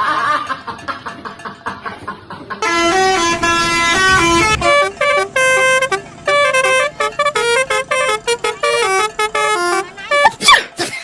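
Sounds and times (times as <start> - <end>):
musical bus horn playing a tune: 2.6 - 11.0.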